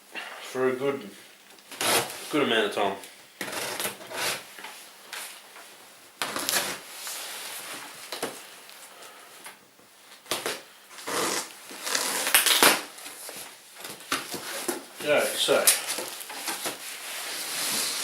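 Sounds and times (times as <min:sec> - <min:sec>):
cardboard rustling and scraping: 0:01.7 - 0:02.4, 0:03.4 - 0:05.4, 0:06.2 - 0:08.7, 0:10.3 - 0:18.0.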